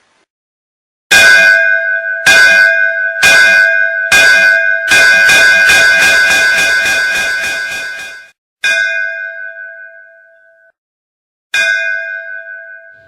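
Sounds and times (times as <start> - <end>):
loud school bell ringing: 1.1 - 10.1.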